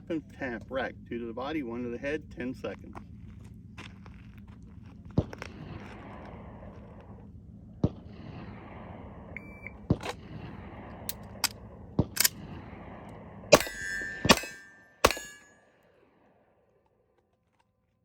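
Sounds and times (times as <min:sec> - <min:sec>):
shot timer beep: 0:09.4 - 0:09.8.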